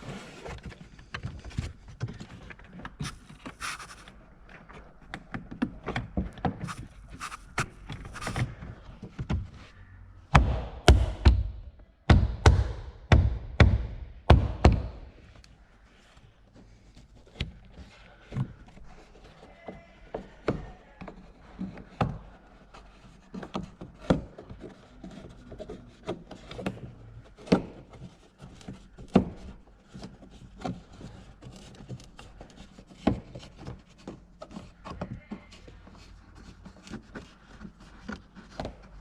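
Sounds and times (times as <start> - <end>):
hands handling plastic trim parts: 0.6 - 8.6.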